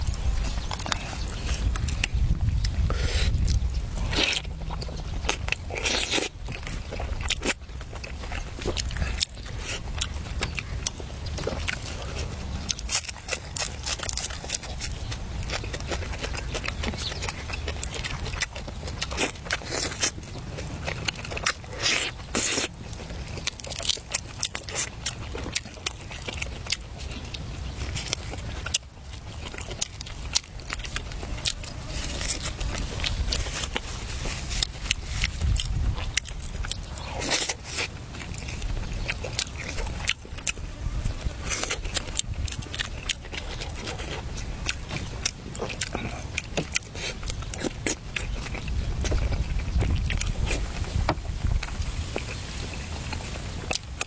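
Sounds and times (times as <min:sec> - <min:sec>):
steady low rumble: 0:00.0 - 0:19.6, 0:25.0 - 0:54.0
food being chewed: 0:00.0 - 0:54.0.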